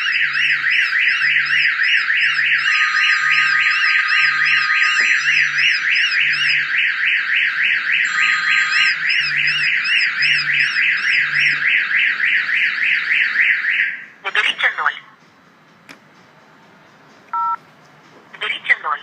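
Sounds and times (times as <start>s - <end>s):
car alarm warbling siren: 0.0s - 14.2s.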